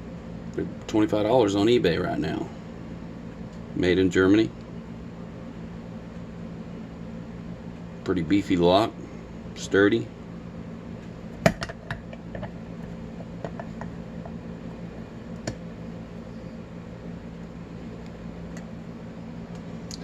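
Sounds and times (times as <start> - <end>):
low hum: 0.0 - 20.0.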